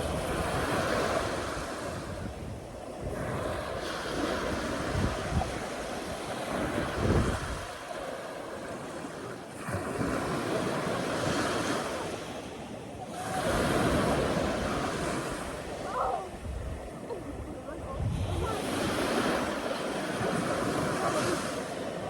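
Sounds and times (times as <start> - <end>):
wind buffeting microphone: 0.0 - 7.8, 13.2 - 21.2
surging water: 0.0 - 22.0.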